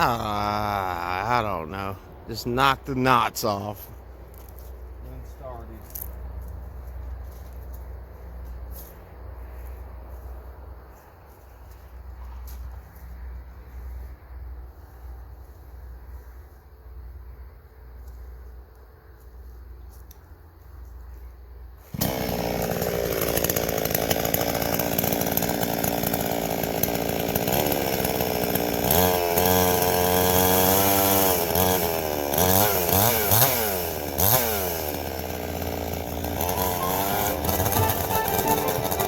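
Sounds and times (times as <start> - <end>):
chainsaw cutting into log: 21.8 - 39.0.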